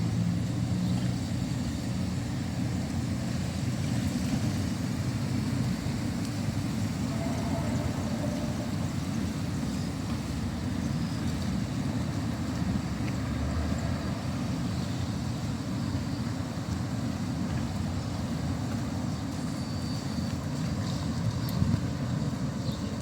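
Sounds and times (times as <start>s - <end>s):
low rumble of street ambience: 0.0s - 23.0s
faint higher sounds: 6.9s - 9.5s.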